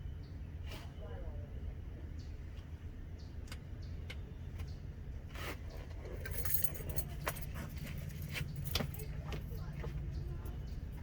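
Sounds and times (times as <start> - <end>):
keys jangling: 6.1 - 9.1.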